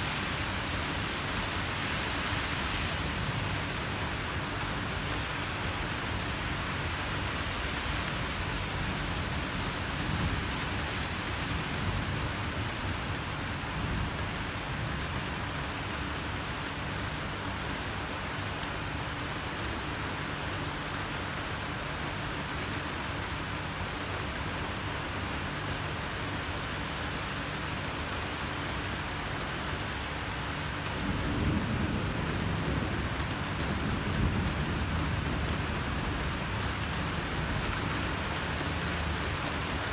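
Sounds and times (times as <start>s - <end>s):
steady rain falling: 0.0s - 39.9s
thunder rumbling: 31.0s - 38.2s.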